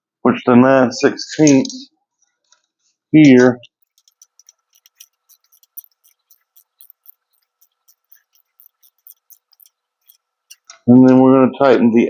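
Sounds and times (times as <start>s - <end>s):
ratchet wrench clicking: 3.8s - 10.8s.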